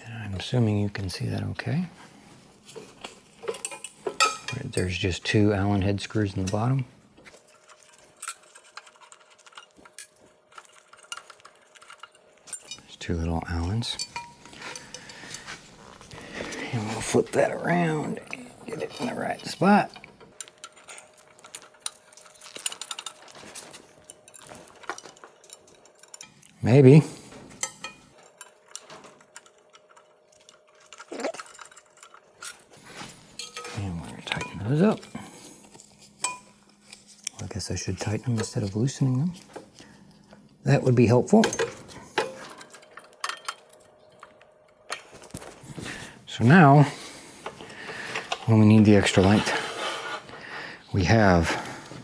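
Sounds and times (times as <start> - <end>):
allen key clicking on metal screws: 7.4 - 12.8, 20.3 - 26.4, 27.6 - 32.6, 42.2 - 44.4
allen key clicking on screws: 27.6 - 32.6, 41.4 - 45.1.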